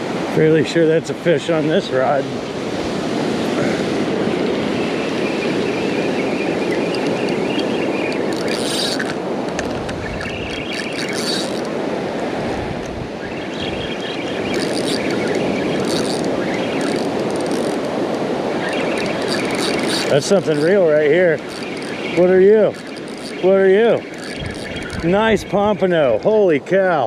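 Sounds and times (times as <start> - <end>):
surf: 0.0 - 27.0
wind: 0.0 - 27.0
fishing reel whirring: 4.4 - 12.1, 13.2 - 25.5.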